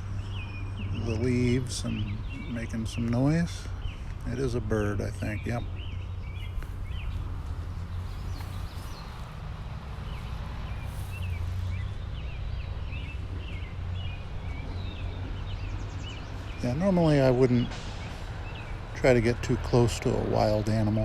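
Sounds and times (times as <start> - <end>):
steady low rumble: 0.0 - 15.4
small birds chirping: 0.0 - 21.0
rustling in leaves and grass: 6.0 - 14.2.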